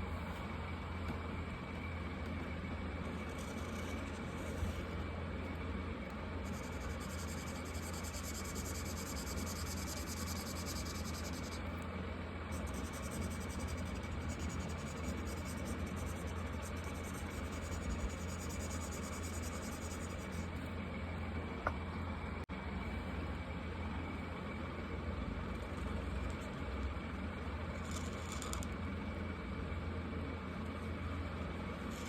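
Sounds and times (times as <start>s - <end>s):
constant low hum: 0.0s - 32.0s
marker scratching on paper: 3.1s - 5.0s, 6.4s - 11.7s, 12.5s - 20.5s.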